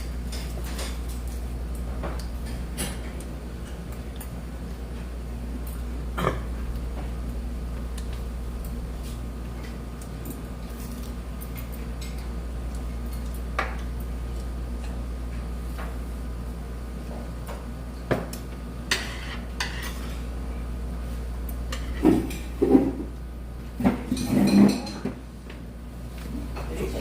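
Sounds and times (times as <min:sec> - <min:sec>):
dishes and cutlery clinking: 0:00.0 - 0:04.3, 0:18.9 - 0:20.2, 0:23.8 - 0:25.2
steady low hum: 0:00.0 - 0:27.0.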